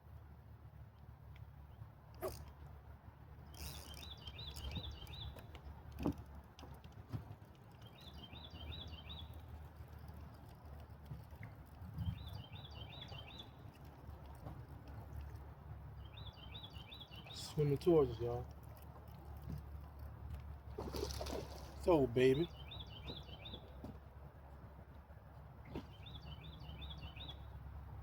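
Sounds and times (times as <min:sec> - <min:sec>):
songbird singing: 0:03.4 - 0:06.2, 0:07.6 - 0:24.0, 0:25.6 - 0:27.9.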